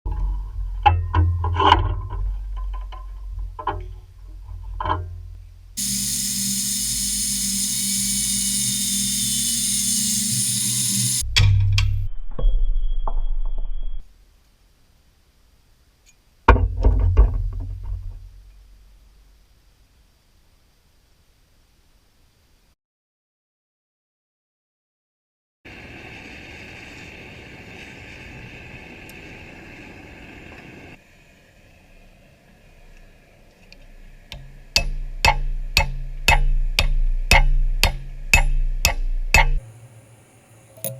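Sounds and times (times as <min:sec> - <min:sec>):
motorized machine humming and hissing: 0:05.8 - 0:11.2, 0:39.6 - 0:40.9.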